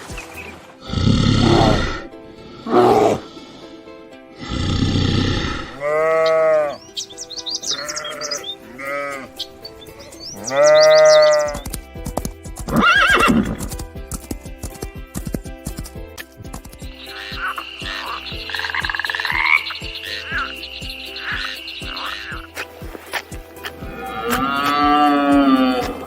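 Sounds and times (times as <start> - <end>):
background music: 0.0 - 26.0
farm animal calls: 4.4 - 11.8, 16.9 - 26.0
high bird-like chirps: 6.2 - 11.7, 16.8 - 24.8.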